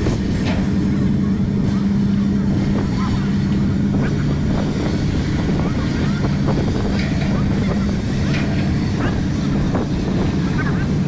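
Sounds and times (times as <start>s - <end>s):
boat engine drone: 0.0s - 11.0s
wind buffeting microphone: 0.0s - 11.0s.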